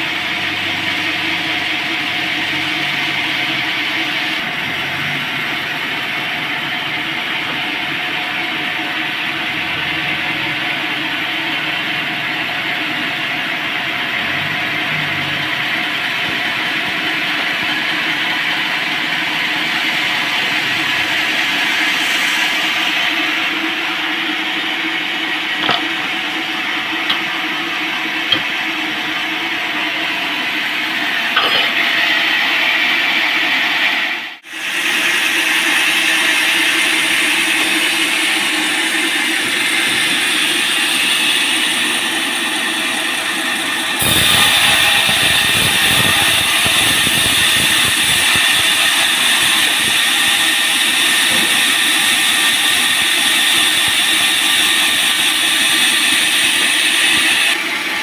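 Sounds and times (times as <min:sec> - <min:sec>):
band saw sawing log: 0:15.1 - 0:32.8, 0:35.0 - 0:57.6.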